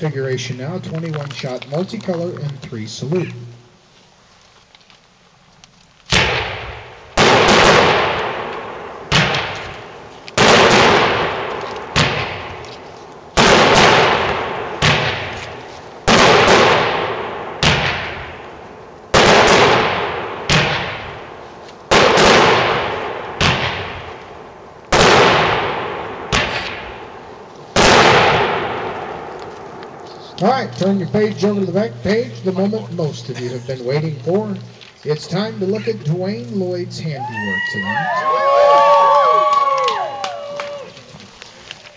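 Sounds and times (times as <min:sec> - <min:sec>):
firework shots banging: 0:06.0 - 0:33.4.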